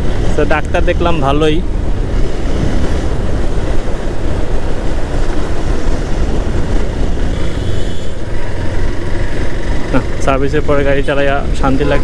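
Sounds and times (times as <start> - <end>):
motorcycle engine: 0.0 - 12.0
road noise: 0.0 - 12.0
wind over microphone: 1.6 - 8.5.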